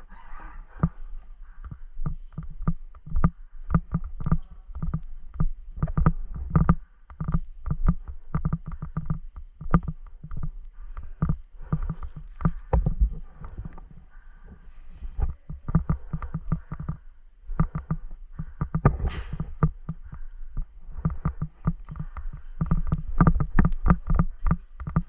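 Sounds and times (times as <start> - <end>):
irregular thuds and knocks: 15.1 - 25.0.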